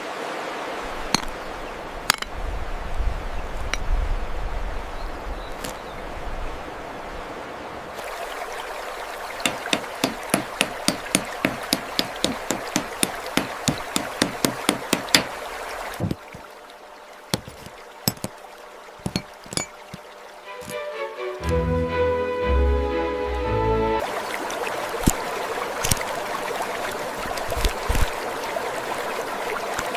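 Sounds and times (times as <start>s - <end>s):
running water hiss: 0.0s - 21.8s, 22.9s - 29.9s
sharp tapping knocks: 9.4s - 15.4s, 17.4s - 18.3s.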